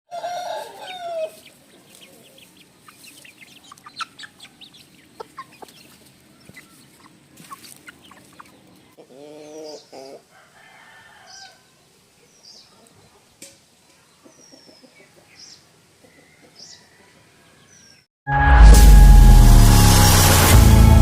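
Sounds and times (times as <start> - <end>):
rooster crowing: 0.1 - 1.4, 10.3 - 11.7
chickens chirping and clucking: 0.1 - 10.3, 11.2 - 18.0.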